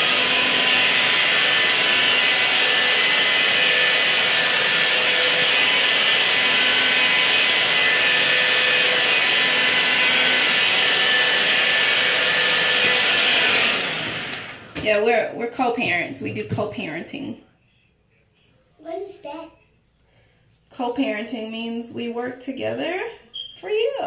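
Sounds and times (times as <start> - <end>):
hair dryer running: 0.0 - 16.8.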